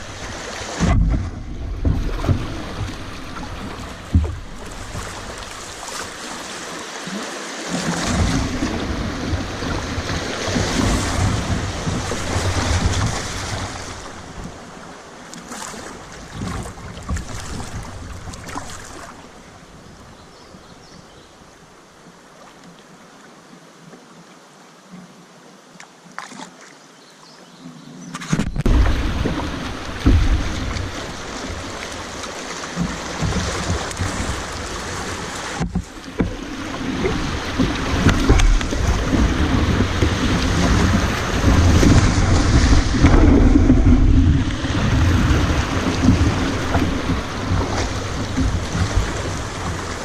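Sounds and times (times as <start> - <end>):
water rushing around a kayak: 0.0 - 50.0
wind buffeting microphone: 28.4 - 50.0.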